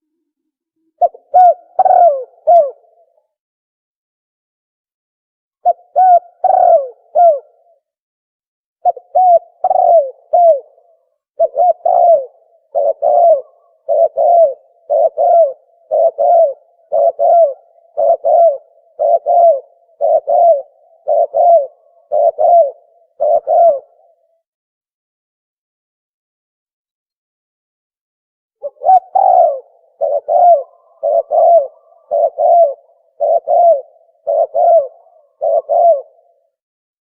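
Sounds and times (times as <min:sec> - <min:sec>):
dove cooing: 0:00.0 - 0:03.2, 0:05.6 - 0:07.8, 0:08.8 - 0:24.4, 0:28.6 - 0:36.6.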